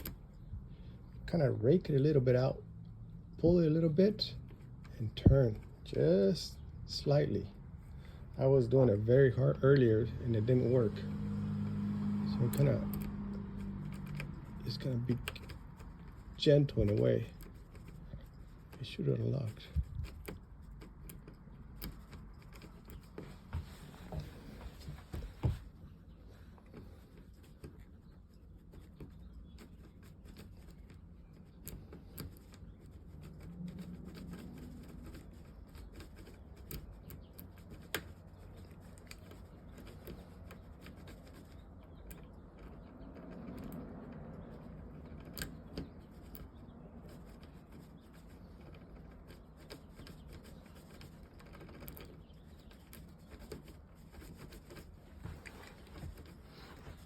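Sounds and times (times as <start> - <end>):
key clicking and scraping in lock: 0.0 - 0.5, 12.3 - 24.6, 25.2 - 55.0.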